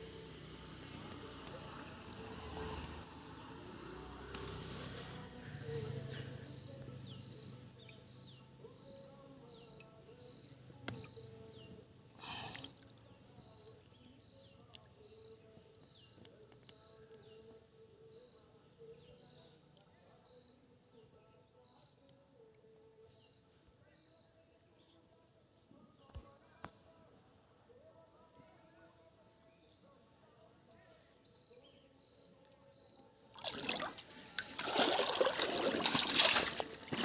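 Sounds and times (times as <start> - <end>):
short insect chirp: 0.0 - 16.1
insect chorus drone: 0.0 - 22.5, 27.2 - 37.0.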